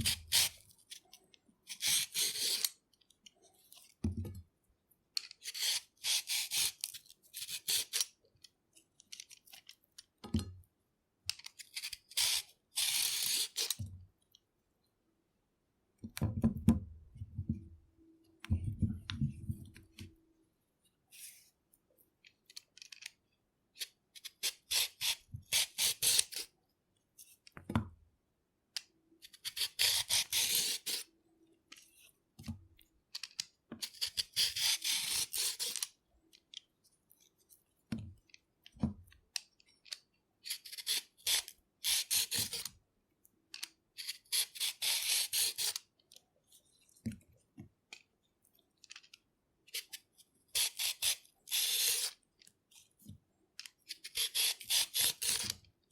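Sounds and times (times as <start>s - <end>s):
peeler scraping carrot: 0.0s - 1.0s, 1.7s - 2.8s, 5.4s - 8.1s, 11.6s - 13.8s, 23.8s - 26.5s, 29.2s - 31.1s, 33.8s - 35.9s, 44.0s - 45.8s, 49.7s - 52.2s, 53.9s - 55.6s.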